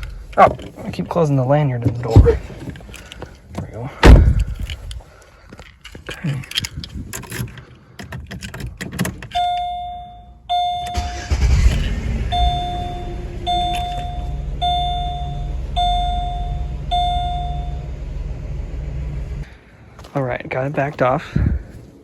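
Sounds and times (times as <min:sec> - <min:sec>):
ignition clicks: 0:07.2 - 0:17.9
dashboard warning chime: 0:09.4 - 0:11.4, 0:12.2 - 0:18.0
car engine cranking and starting: 0:10.5 - 0:19.5
car engine idling: 0:10.5 - 0:19.5.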